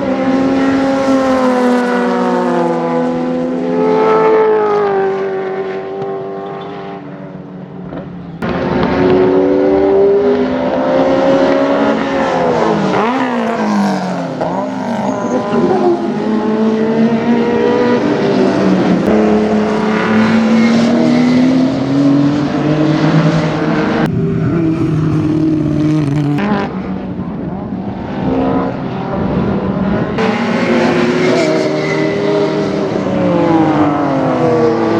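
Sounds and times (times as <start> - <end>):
racing car engines: 0.0 - 34.9.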